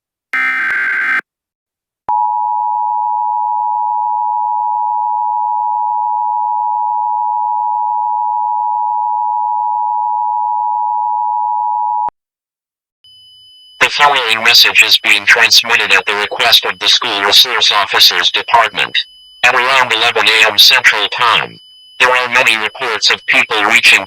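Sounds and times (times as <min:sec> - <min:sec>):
two-tone alarm: 0:00.4 - 0:01.2, 0:13.1 - 0:24.0
buzzy warbling data burst: 0:13.8 - 0:24.0.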